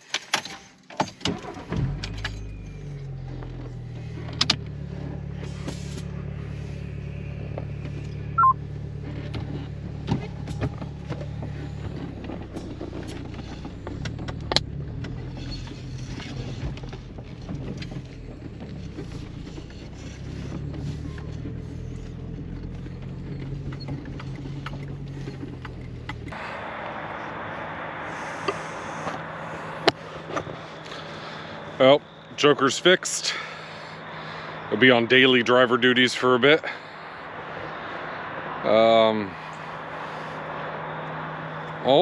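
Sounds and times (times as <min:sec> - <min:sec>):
car engine running: 0:01.2 - 0:42.0
short high-pitched chirp: 0:08.4 - 0:08.6.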